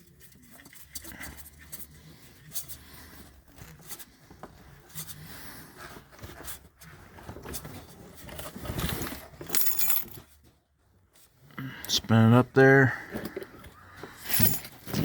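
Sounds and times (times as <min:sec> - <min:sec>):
clicks and rustles of tools: 0:05.8 - 0:11.4, 0:13.0 - 0:15.0.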